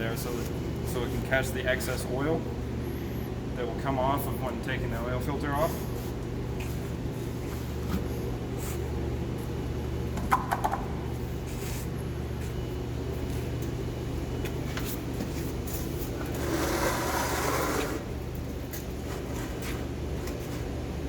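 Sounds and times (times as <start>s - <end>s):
low machine hum: 0.0s - 21.0s.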